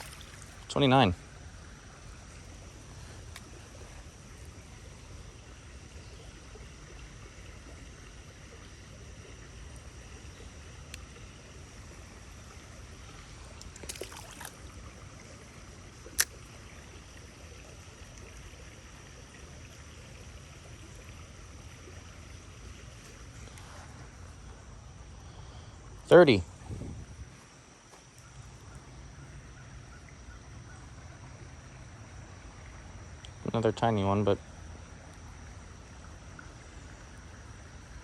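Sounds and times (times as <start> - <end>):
creek water rushing: 0.0 - 28.0.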